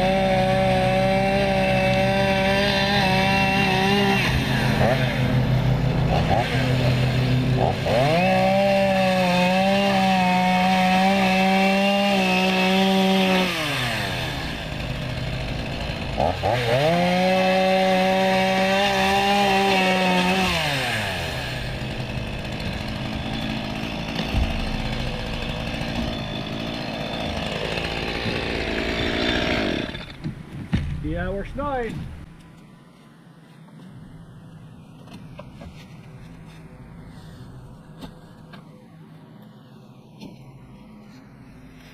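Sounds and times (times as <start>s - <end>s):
chainsaw cutting wood: 0.0s - 30.4s.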